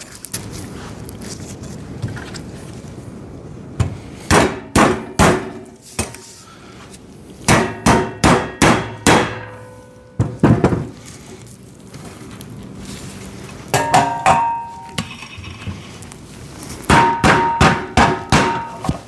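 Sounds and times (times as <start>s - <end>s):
steel tubes being knocked: 13.8s - 15.1s, 16.9s - 19.0s.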